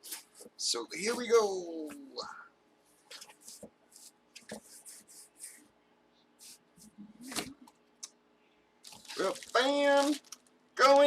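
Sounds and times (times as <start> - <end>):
packaging rustling and crinkling: 8.8 - 11.0.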